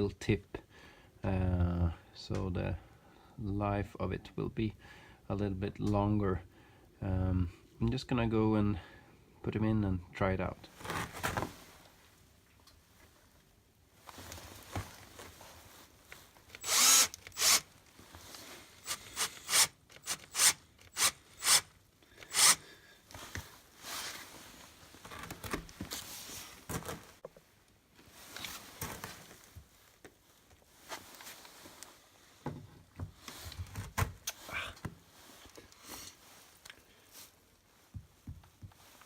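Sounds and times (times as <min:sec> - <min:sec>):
power drill driving screws: 0:16.6 - 0:17.7, 0:18.8 - 0:22.6.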